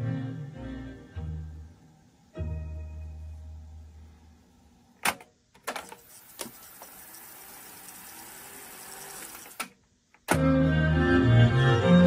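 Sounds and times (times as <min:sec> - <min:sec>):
cassette deck whirring: 0:05.0 - 0:10.4.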